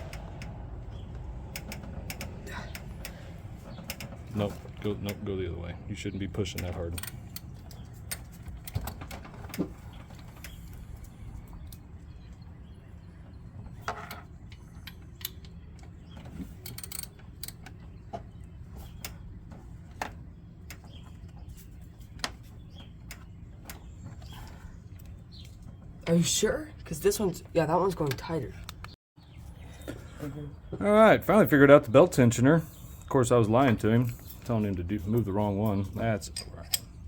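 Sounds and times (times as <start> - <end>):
low background hum: 0.0 - 37.0
metal tools clicking and clinking: 16.5 - 17.8, 34.0 - 37.0.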